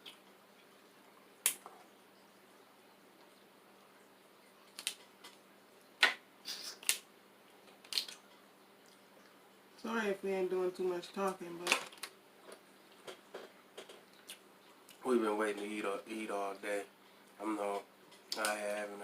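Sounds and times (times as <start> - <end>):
shells cracking while eating: 4.6 - 5.4, 6.0 - 9.0, 11.7 - 15.0.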